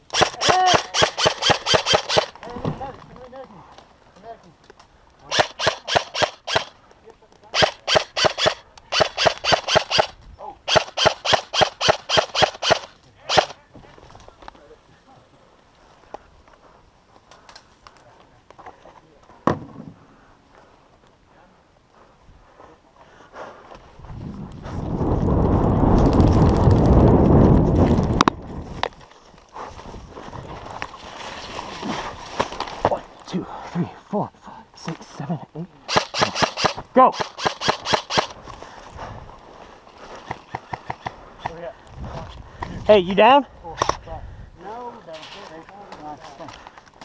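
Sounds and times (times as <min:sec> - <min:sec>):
airsoft rifle shots: 0:00.0 - 0:02.4, 0:05.3 - 0:06.8, 0:07.5 - 0:13.6, 0:35.9 - 0:38.4
sharp clicks: 0:00.0 - 0:02.5, 0:04.7 - 0:06.8, 0:07.4 - 0:13.6, 0:35.9 - 0:38.4, 0:40.2 - 0:41.6
rumbling and rustling on microphone: 0:13.6 - 0:33.3, 0:41.2 - 0:43.1.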